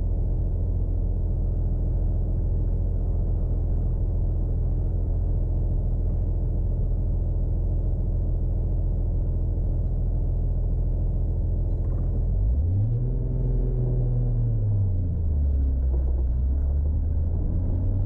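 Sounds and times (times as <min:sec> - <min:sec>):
car engine deep even rumble: 0:00.0 - 0:18.0.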